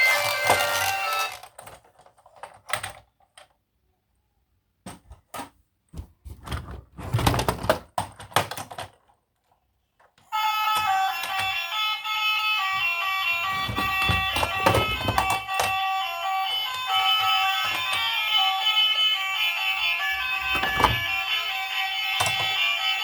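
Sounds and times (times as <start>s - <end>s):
toy packaging clicks and knocks: 0.0s - 3.6s, 7.2s - 11.6s, 12.8s - 15.9s, 16.7s - 18.4s, 22.0s - 22.7s.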